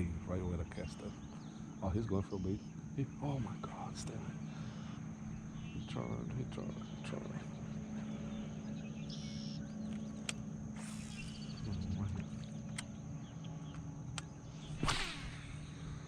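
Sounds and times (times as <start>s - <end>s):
steady low hum: 0.0s - 16.0s
light clicks: 9.8s - 10.5s
short swishes: 14.6s - 16.0s.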